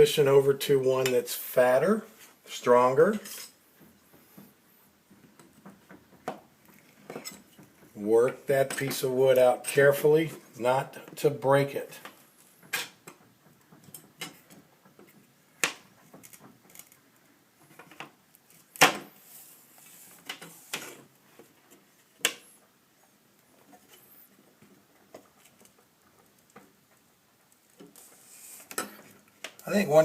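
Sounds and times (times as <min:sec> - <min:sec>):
small scrapes: 0:27.8 - 0:29.1.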